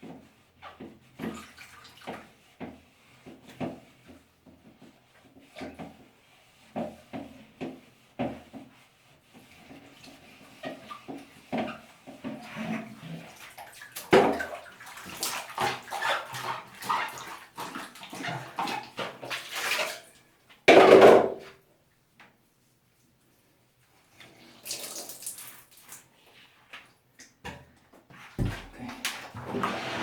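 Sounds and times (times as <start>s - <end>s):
water splashing in a tub: 1.2s - 2.3s, 12.3s - 20.3s, 24.6s - 26.1s.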